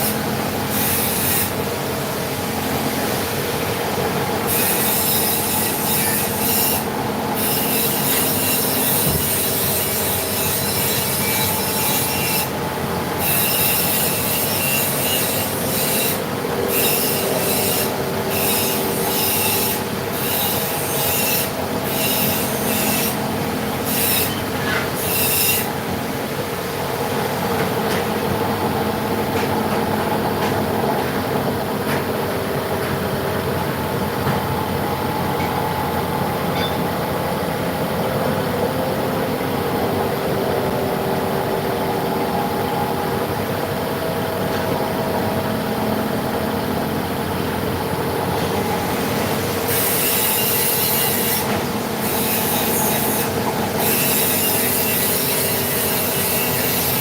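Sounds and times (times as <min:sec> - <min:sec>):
high screeching metal cutting: 0:00.0 - 0:01.6, 0:04.4 - 0:12.6, 0:13.2 - 0:25.8, 0:49.6 - 0:57.0.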